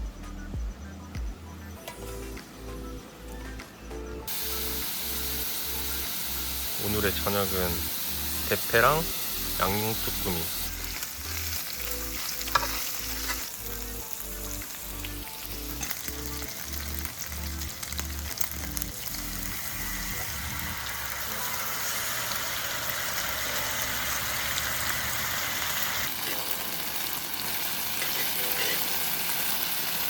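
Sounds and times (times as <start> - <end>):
low background music: 0.0 - 30.0
food sizzling in a pan: 4.3 - 30.0.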